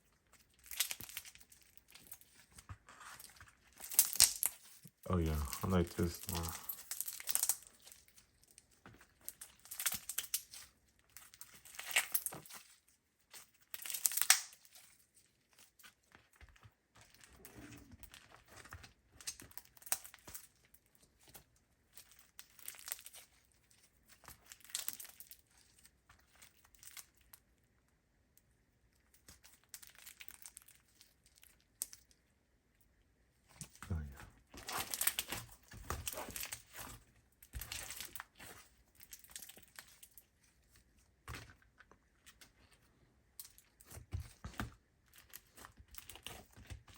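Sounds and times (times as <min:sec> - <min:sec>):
slime crackling and popping: 0:00.3 - 0:02.6, 0:03.2 - 0:16.4, 0:17.0 - 0:21.0, 0:21.9 - 0:27.3, 0:29.1 - 0:32.1, 0:34.6 - 0:40.4, 0:43.4 - 0:46.9.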